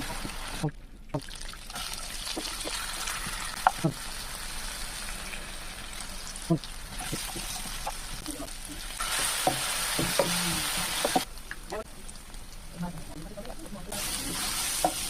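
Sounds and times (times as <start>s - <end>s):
food sizzling in oil: 1.4s - 15.0s.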